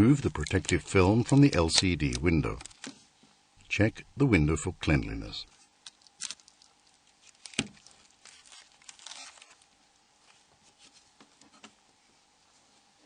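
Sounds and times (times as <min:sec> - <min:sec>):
soft rustling: 0:06.4 - 0:13.0.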